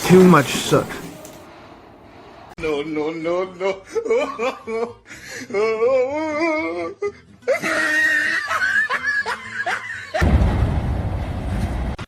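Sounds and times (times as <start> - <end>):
voices: 0.0 - 1.4
people laughing hard: 3.9 - 5.1, 7.5 - 10.2.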